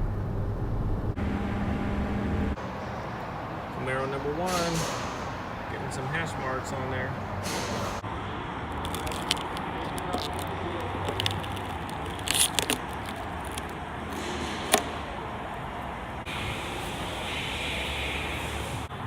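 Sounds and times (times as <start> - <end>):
steady background noise: 0.0 - 19.0
scraping or rustling: 8.8 - 14.9.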